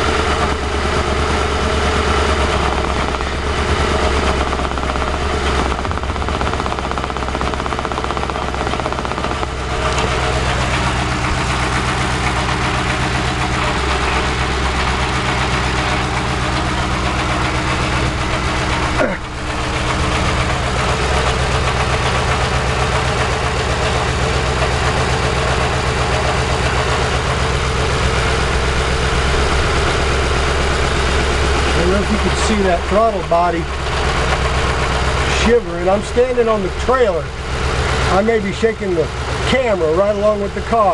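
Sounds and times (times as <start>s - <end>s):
car engine idling roughly: 0.0s - 40.9s.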